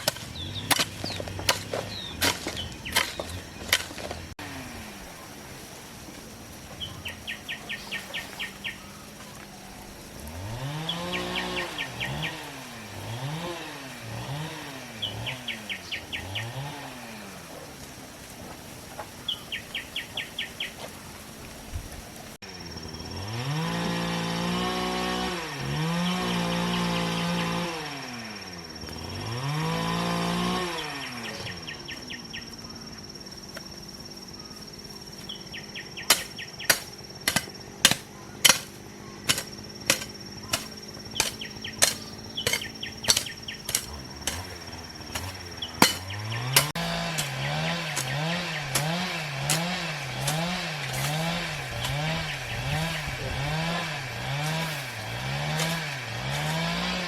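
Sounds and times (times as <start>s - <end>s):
small engine power tool revving: 0.0s - 5.2s, 10.1s - 17.7s, 22.7s - 32.0s, 39.3s - 57.0s
sharp knocks: 36.1s - 44.5s, 45.1s - 47.4s.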